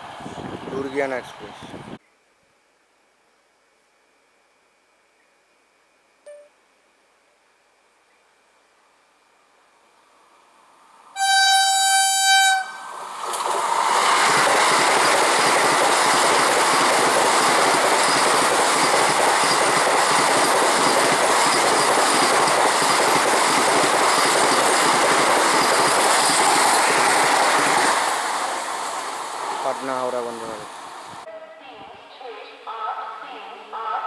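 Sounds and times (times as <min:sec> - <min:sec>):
train rushing past: 0:00.0 - 0:01.9, 0:10.8 - 0:31.3
train horn blast: 0:11.2 - 0:12.9.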